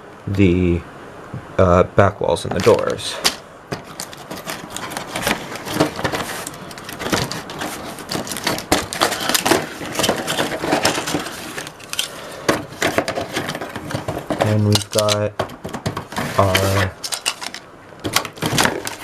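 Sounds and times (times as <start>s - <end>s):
packaging crinkling: 2.5s - 15.3s, 15.9s - 19.0s
plastic pieces clattering: 2.5s - 19.0s.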